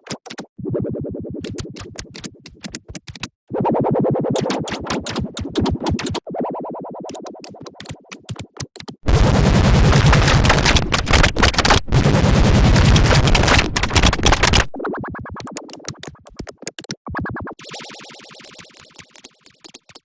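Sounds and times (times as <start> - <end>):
stuttering electronic music: 7.1 - 20.0.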